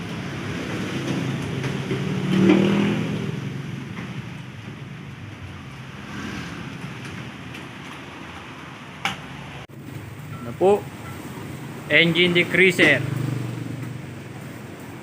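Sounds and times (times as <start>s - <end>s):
car engine revving: 0.0s - 4.0s, 5.8s - 7.1s.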